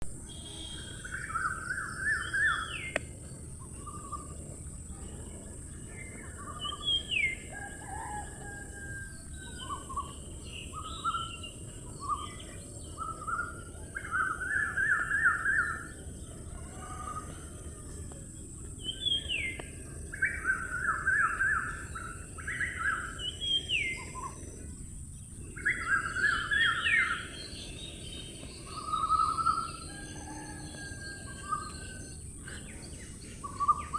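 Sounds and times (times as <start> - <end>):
steady high-pitched hiss: 0.1 - 33.9
birds chirping: 0.2 - 33.9.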